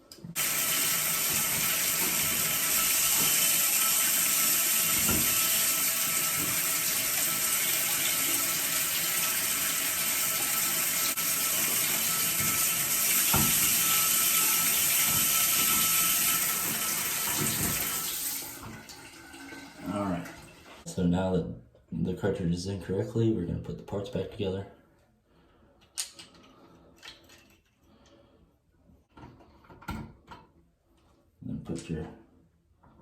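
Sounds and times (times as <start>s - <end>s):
shower water running: 0.3s - 20.9s.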